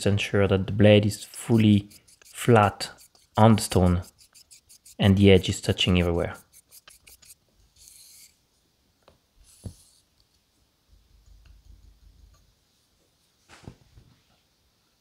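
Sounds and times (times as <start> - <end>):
razor swishing on whetstone: 1.2 - 8.3.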